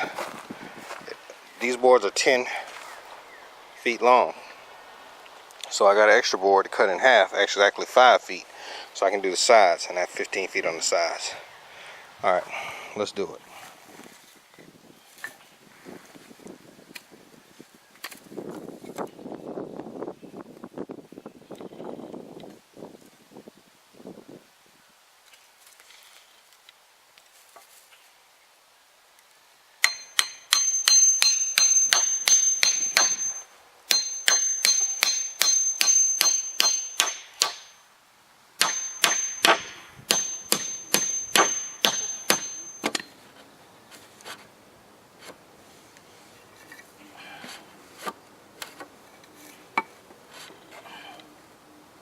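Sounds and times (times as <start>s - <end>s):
hammer driving nails into wood: 29.8s - 37.8s, 38.6s - 43.1s.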